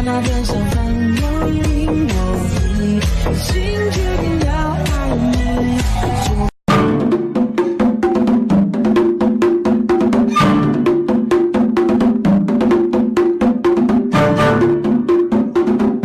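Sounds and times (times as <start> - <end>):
fast wood block percussion: 0.0 - 16.0
plucked bouncy melody: 6.7 - 7.8, 10.2 - 11.5, 13.9 - 15.6.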